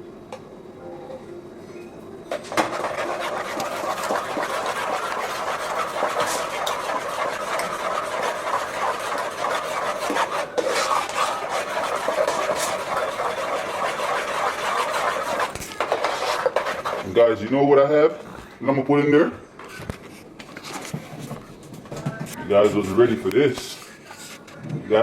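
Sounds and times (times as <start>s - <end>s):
spoon stirring porridge in pot: 2.3s - 17.2s.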